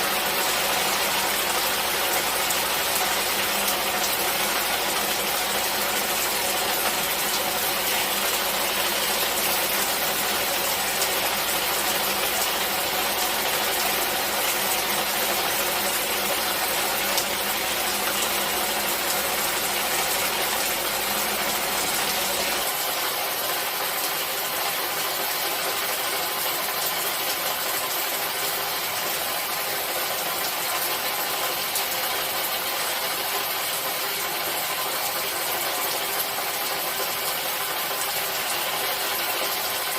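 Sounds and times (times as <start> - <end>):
rain hissing: 0.0 - 24.4.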